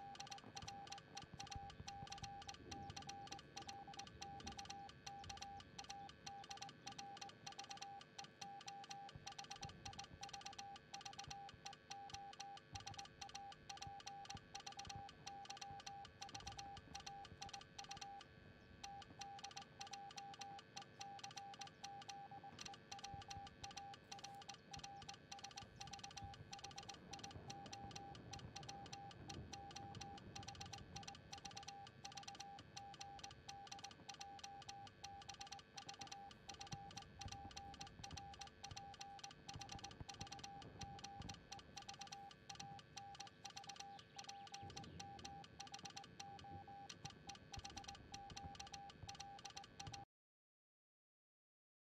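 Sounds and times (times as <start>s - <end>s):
morse code beeps: 0.0s - 50.0s.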